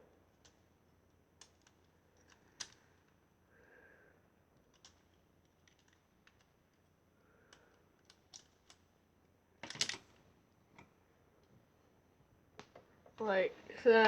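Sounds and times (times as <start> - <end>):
plastic toy bricks clicking: 4.7 - 6.5, 7.5 - 8.8, 9.6 - 10.1.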